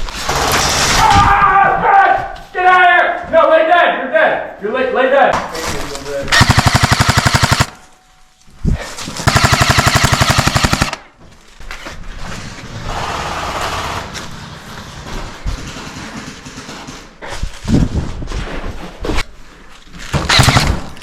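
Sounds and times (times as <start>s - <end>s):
shuffling and rustling: 5.4s - 6.3s, 17.2s - 20.1s
airsoft rifle full-auto burst: 6.3s - 7.8s, 9.2s - 11.1s, 12.9s - 14.2s, 20.3s - 20.9s.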